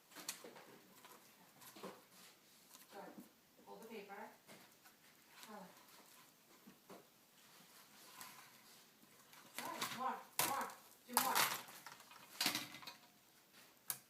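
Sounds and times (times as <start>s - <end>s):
small hard objects clattering: 9.2s - 13.2s.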